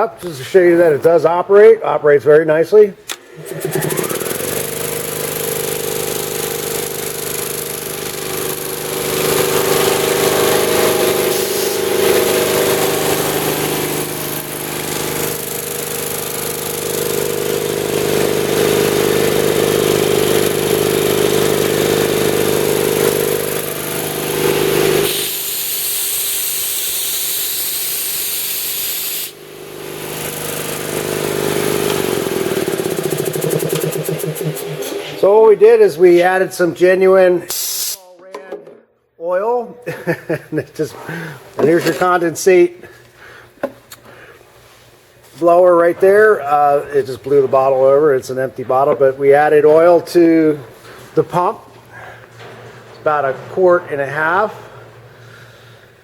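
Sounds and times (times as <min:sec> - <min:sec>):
air compressor running: 0:03.0 - 0:38.0, 0:39.9 - 0:56.0
air hissing out: 0:10.0 - 0:13.0, 0:24.8 - 0:29.4, 0:37.5 - 0:38.1.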